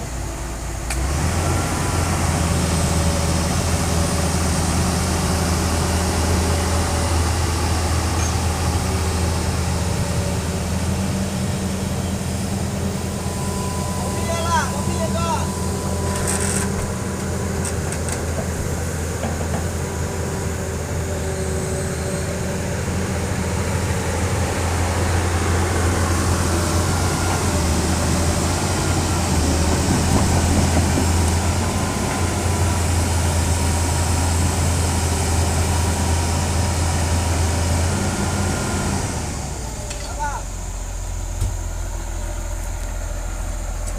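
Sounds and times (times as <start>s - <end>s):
excavator diesel engine droning: 0.0s - 43.9s
faint steady whining tones: 9.3s - 19.2s.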